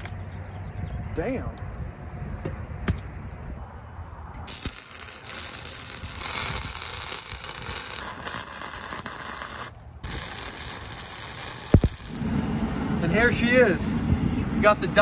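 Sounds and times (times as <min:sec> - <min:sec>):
welding arc crackling hiss: 0:04.5 - 0:12.3.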